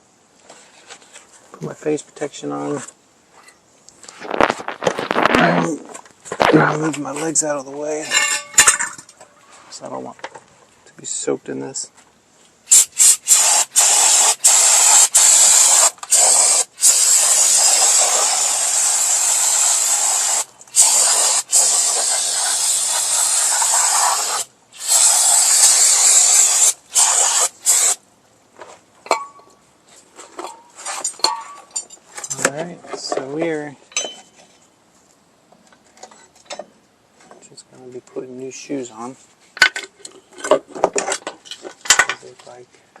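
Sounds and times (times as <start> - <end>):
aerosol spray hissing: 12.7 - 28.0.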